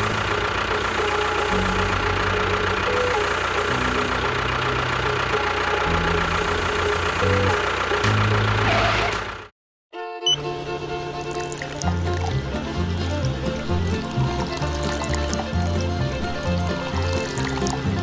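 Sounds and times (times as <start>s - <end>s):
engine running steadily: 0.0s - 9.5s, 10.3s - 18.0s
background music: 11.2s - 18.0s.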